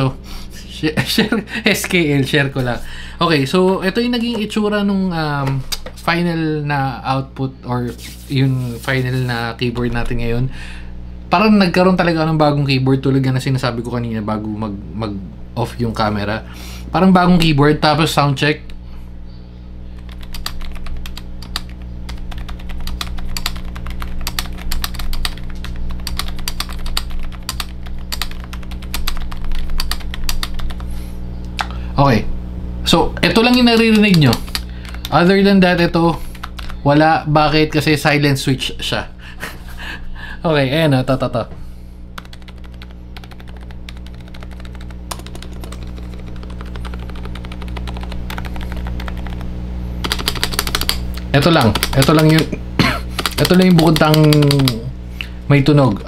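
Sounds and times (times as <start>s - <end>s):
steady low hum: 0.0s - 56.0s
fast typing on keyboard: 20.0s - 30.9s, 33.3s - 35.2s, 36.3s - 36.8s, 42.2s - 52.5s, 53.2s - 54.8s.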